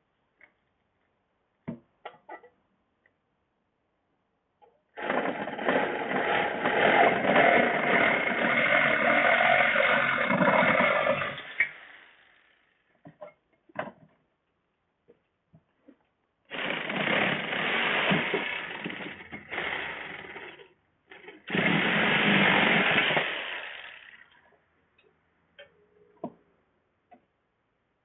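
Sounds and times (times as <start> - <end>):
handheld power tool running: 5.0 - 12.5, 16.5 - 24.4.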